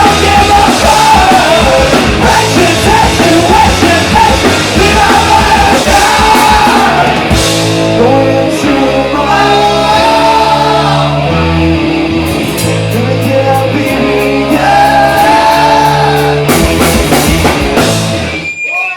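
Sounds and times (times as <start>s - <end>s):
person singing long lines: 0.0s - 12.3s
punk rock band playing live: 0.0s - 18.6s.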